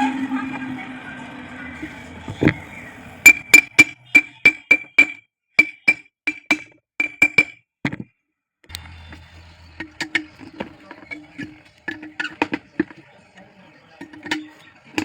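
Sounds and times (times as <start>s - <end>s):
ringing metal taps: 3.3s - 8.0s, 9.8s - 13.2s, 14.0s - 15.0s.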